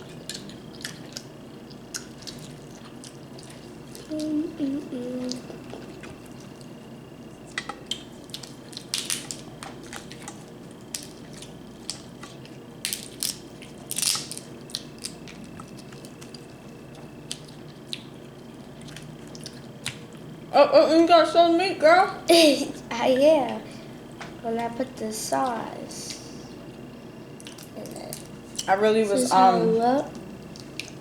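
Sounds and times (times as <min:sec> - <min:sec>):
crab shells cracking: 0:07.9 - 0:16.5.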